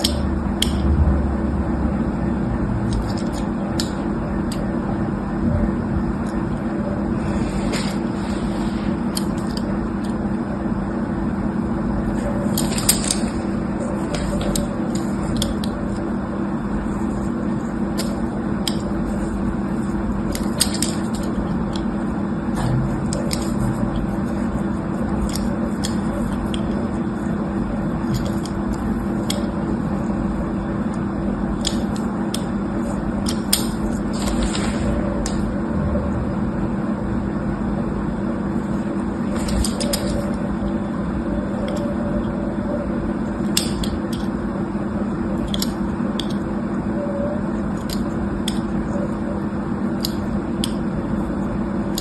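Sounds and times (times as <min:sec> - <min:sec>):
low steady hum: 0:00.0 - 0:52.0.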